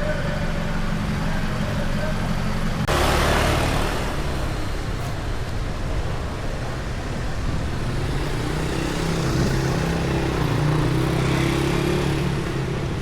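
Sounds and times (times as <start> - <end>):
street traffic noise: 0.0 - 13.0
vehicle engine passing by: 2.8 - 13.0.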